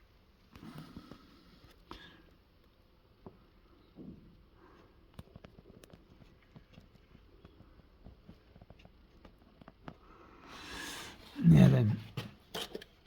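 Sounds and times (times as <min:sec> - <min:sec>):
faint handling clicks and taps: 0:00.5 - 0:10.1.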